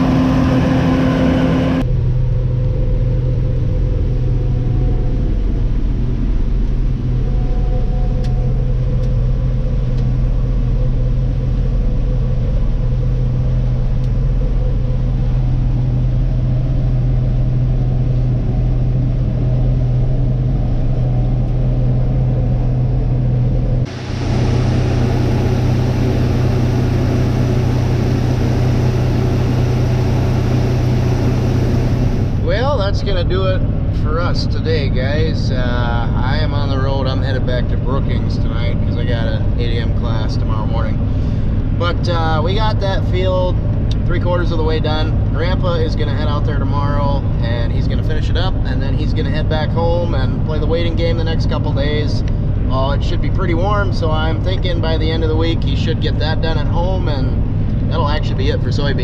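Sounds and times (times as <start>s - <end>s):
vehicle engine rumbling: 0.0s - 59.0s
road hiss: 23.9s - 28.0s.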